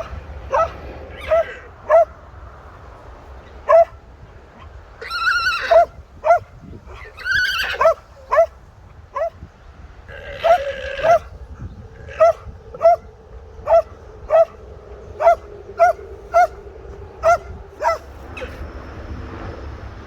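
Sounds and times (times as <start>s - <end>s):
alpaca alarm call: 5.0s - 6.4s, 10.1s - 11.4s, 12.0s - 16.6s.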